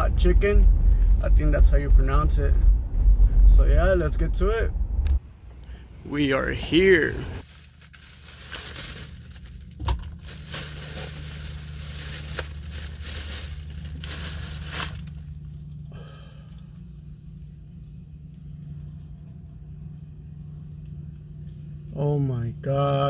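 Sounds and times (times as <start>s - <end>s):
steady low hum: 0.0s - 23.0s
packaging crinkling and rustling: 7.4s - 15.9s.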